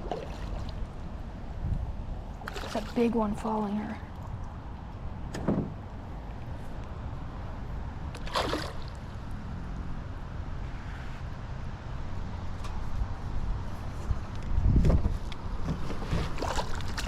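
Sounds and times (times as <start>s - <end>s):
water sloshing against canoe: 0.0s - 1.2s, 2.3s - 4.6s, 15.7s - 17.0s.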